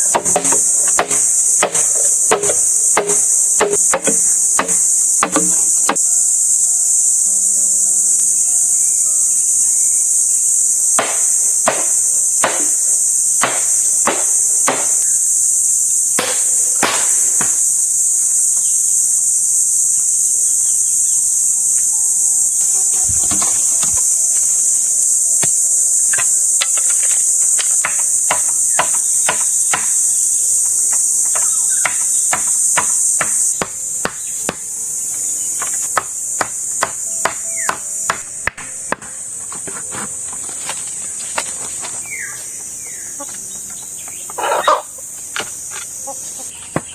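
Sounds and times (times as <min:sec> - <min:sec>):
high-pitched insect chorus: 0:00.0 - 0:46.9
hammer strikes: 0:00.1 - 0:06.0, 0:11.0 - 0:12.8, 0:13.4 - 0:15.0, 0:27.7 - 0:30.0, 0:31.2 - 0:34.6, 0:35.6 - 0:39.2.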